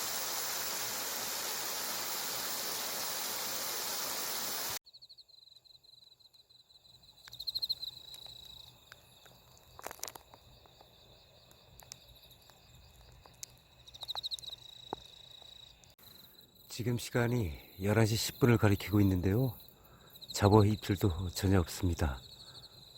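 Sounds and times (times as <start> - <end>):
loud steady hiss: 0.0 - 4.8
crickets chirping: 0.0 - 22.9.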